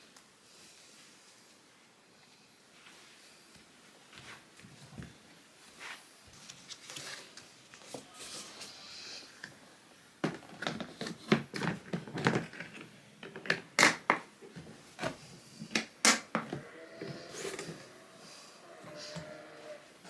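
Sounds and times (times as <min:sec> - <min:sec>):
hard objects clicking and knocking: 0:10.2 - 0:14.4, 0:15.0 - 0:17.8.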